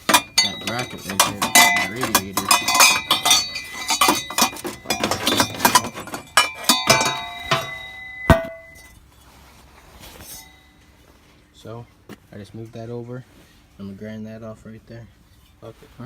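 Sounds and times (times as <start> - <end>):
loud ringing metal strike: 0.0 - 8.8
metal tools clinking: 0.0 - 9.0.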